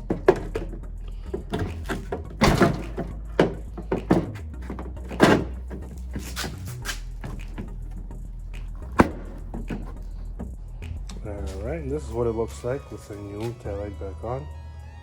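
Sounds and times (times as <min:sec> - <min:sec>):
plastic knocks and clunks: 0:00.0 - 0:08.0, 0:08.8 - 0:10.0.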